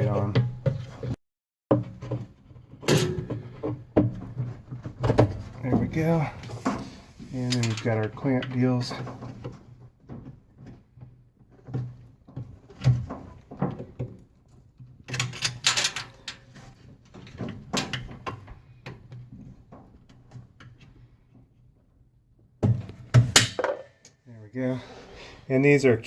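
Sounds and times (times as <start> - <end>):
small metal rattles: 2.8 - 9.8, 14.8 - 20.8.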